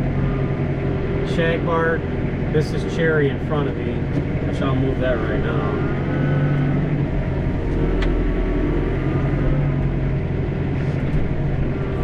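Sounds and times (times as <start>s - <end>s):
tractor diesel engine humming: 0.0s - 12.0s.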